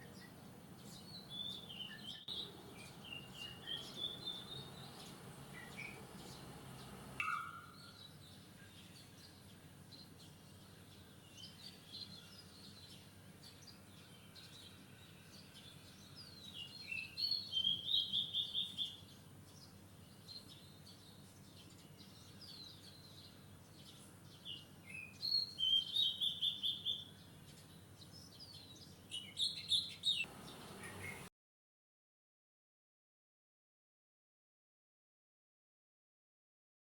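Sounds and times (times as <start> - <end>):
faint bird chirps: 0.0 - 9.5, 28.4 - 31.3
low background noise: 0.0 - 31.3
songbird singing with trill: 0.0 - 31.3.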